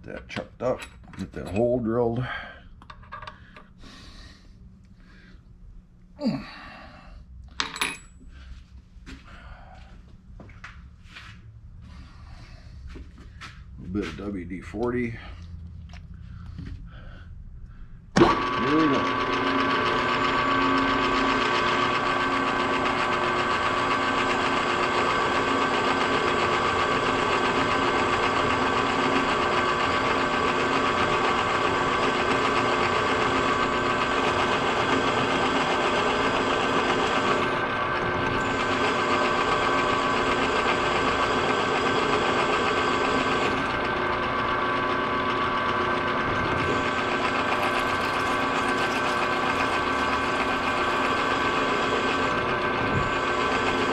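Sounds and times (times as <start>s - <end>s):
milling machine hum and whine: 18.1s - 53.9s.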